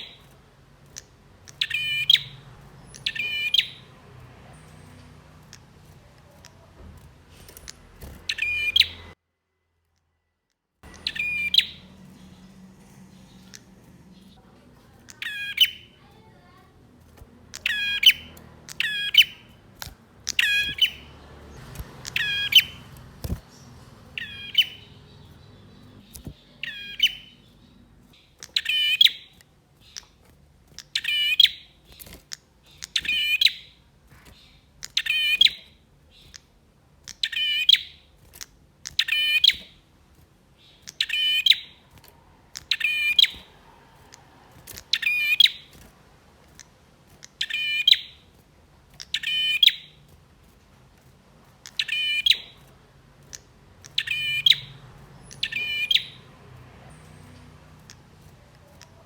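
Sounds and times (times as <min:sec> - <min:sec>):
bird chattering call: 0:01.0 - 0:06.7, 0:07.7 - 0:09.2, 0:10.8 - 0:14.4, 0:15.0 - 0:16.8, 0:17.4 - 0:27.7, 0:51.6 - 0:52.6, 0:53.3 - 0:56.3.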